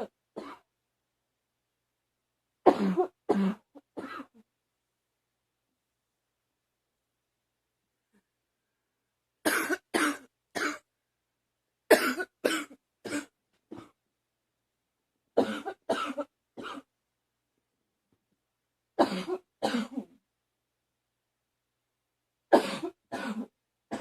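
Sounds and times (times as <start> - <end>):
girl coughing: 2.7 - 4.3, 9.5 - 10.8, 11.9 - 14.0, 15.4 - 16.9, 19.0 - 20.1, 22.6 - 24.0.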